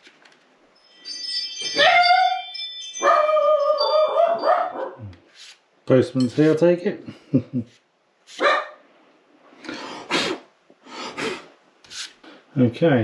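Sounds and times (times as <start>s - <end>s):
dog barking: 4.0s - 5.1s, 8.4s - 8.8s.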